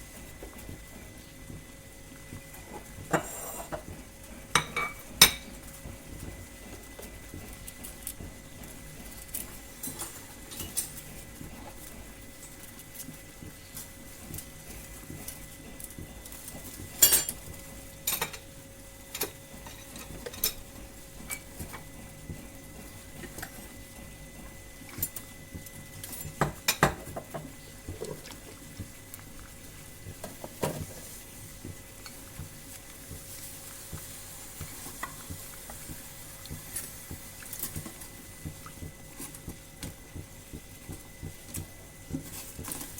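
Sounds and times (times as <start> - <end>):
utensils scraping a pot: 3.1 - 3.8.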